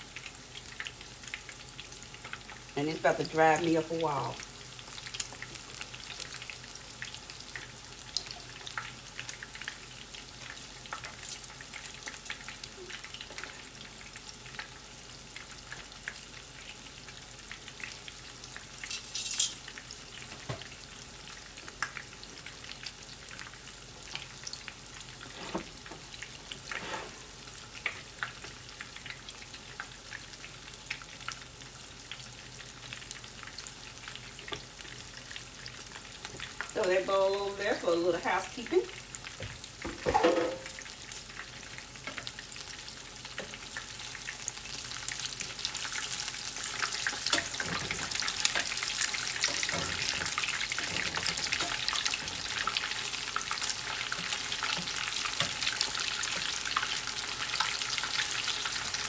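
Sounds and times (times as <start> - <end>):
chicken deep-frying in oil: 0.0 - 59.0.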